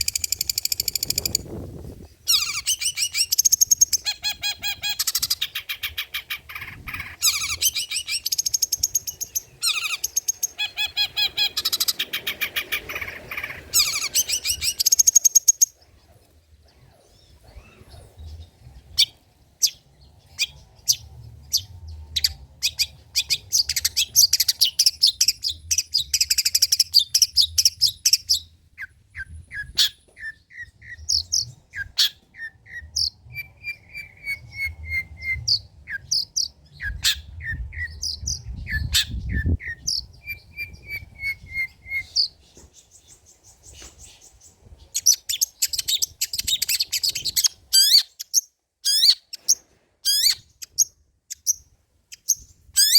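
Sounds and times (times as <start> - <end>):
bird singing: 0.0 - 52.9
faint low rumble: 15.7 - 24.6.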